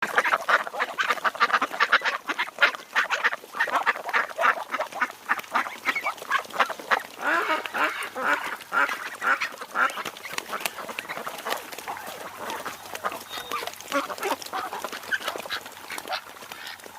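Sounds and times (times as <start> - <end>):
waterfowl chattering calls: 0.0 - 16.9
low bending bird calls: 12.4 - 13.8.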